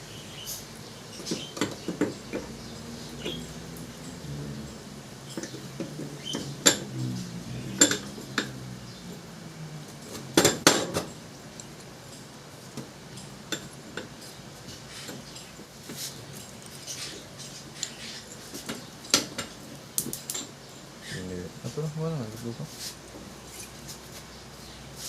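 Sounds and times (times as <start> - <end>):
metal stove parts clinking: 7.8 - 8.6.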